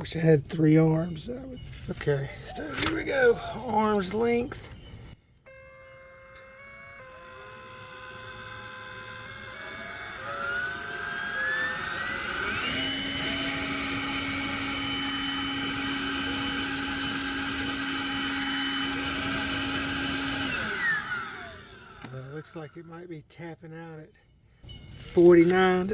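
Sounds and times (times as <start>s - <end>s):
electric leaf blower whine: 5.4s - 22.6s.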